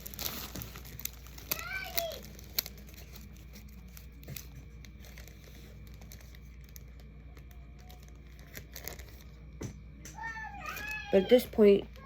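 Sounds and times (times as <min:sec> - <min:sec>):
packaging crinkling and clicking: 0:00.0 - 0:09.3.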